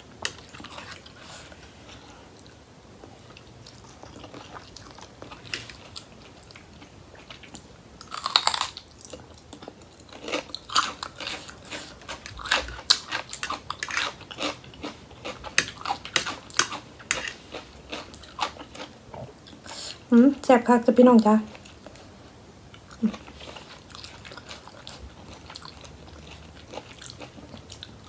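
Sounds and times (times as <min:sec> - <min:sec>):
crunchy chewing: 0:00.2 - 0:20.0, 0:22.7 - 0:28.0
crunchy bite: 0:08.1 - 0:08.8.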